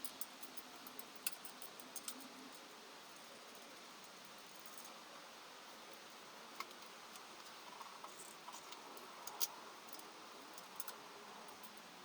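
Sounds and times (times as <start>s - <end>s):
faint light ticks: 0.0s - 2.7s, 6.6s - 11.9s.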